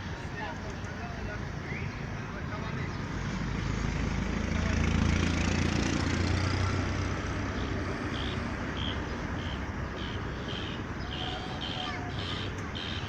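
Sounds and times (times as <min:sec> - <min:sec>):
bird calling: 0:07.6 - 0:13.0.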